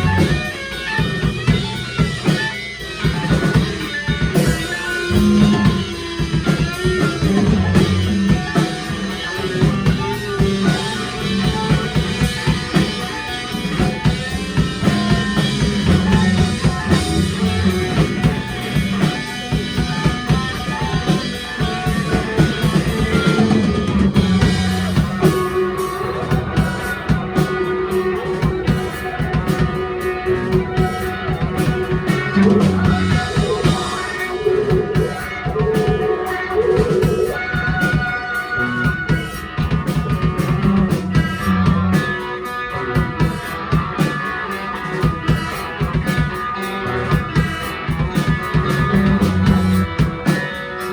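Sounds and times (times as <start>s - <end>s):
live rock band playing: 0.0s - 50.9s.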